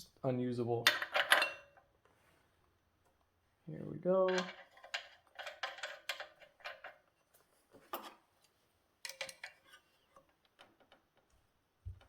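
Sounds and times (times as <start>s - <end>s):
small metal parts clinking: 4.3s - 7.0s.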